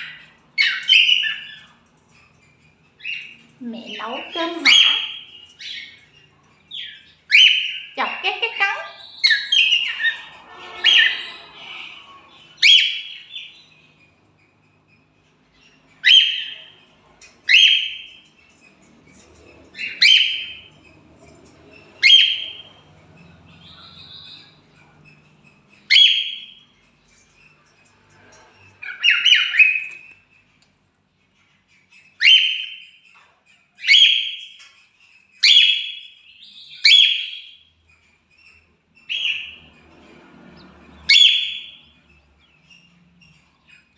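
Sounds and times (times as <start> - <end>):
cockatiels calling: 0.0 - 14.1, 15.2 - 30.6, 31.3 - 40.0, 41.0 - 43.9.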